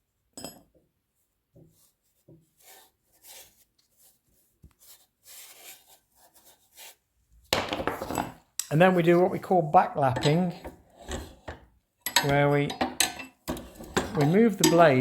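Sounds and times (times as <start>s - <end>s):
paintbrush scratchy strokes: 1.2s - 7.1s.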